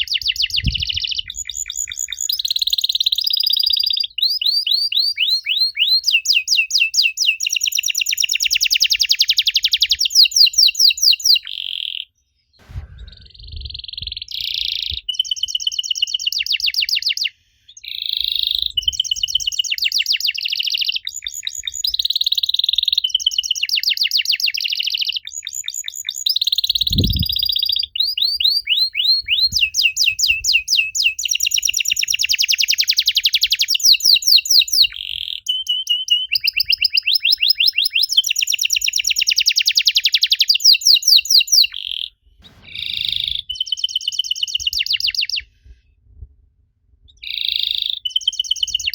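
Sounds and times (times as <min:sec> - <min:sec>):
canary singing trills: 0:00.0 - 0:12.1, 0:13.6 - 0:45.4
soft low thumps: 0:12.6 - 0:15.1.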